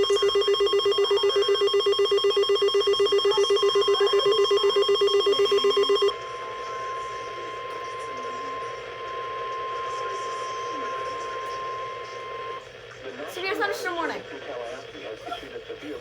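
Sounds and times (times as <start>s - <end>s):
steady alarm tone: 0.0s - 12.6s
rapidly pulsing electronic alarm: 0.0s - 12.7s.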